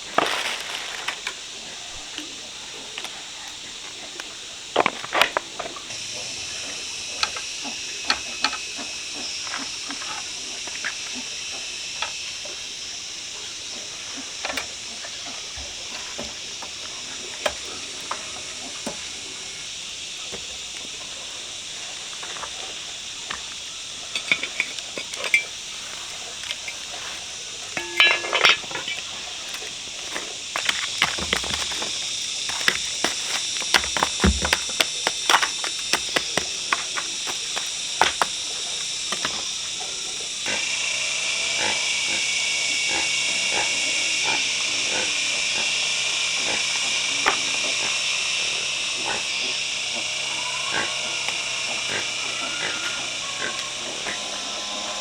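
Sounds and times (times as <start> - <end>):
high-pitched insect chorus: 0.0 - 55.0
scattered clicks and clinks: 24.1 - 38.4.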